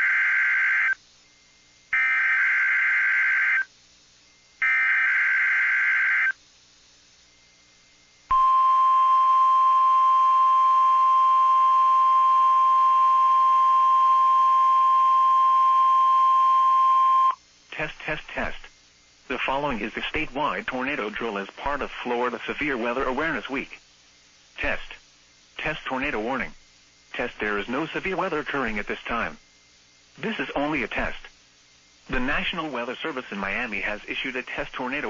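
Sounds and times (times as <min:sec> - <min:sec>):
steady alarm tone: 0:02.0 - 0:03.7, 0:04.6 - 0:06.4.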